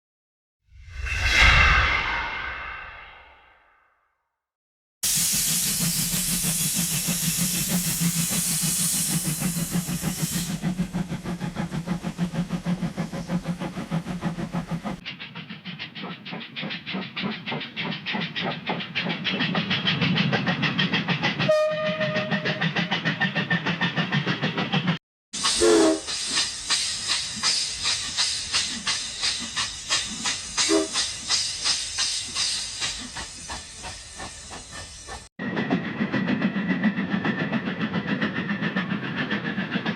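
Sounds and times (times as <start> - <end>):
steam hissing: 5.0 - 15.0, 25.4 - 35.3
steam locomotive chuffing: 5.0 - 39.9
train whistle toot: 21.5 - 22.9, 25.5 - 26.1, 30.6 - 31.0.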